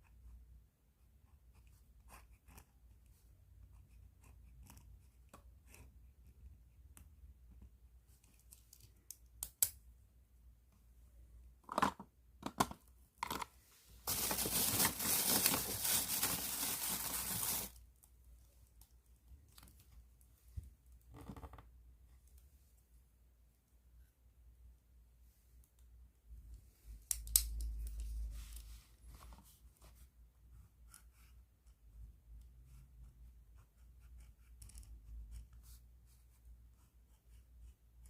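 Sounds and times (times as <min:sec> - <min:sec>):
plastic bag crinkling: 0:14.0 - 0:17.8.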